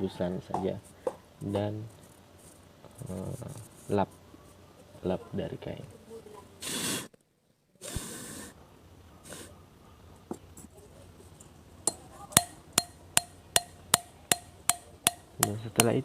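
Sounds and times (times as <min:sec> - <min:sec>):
breath blowing hiss: 0:06.6 - 0:07.2, 0:07.8 - 0:08.6, 0:09.2 - 0:09.5
metal valve tapping clicks: 0:11.9 - 0:16.0.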